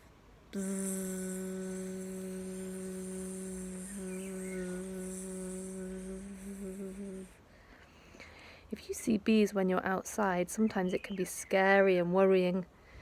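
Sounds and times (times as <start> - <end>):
person imitating buzzing bees: 0.0 - 7.4.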